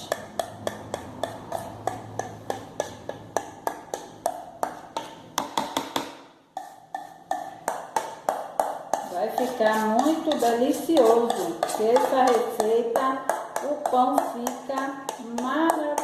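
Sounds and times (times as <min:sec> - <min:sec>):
spoon scraping a bowl: 0:00.0 - 0:04.1, 0:06.6 - 0:15.2.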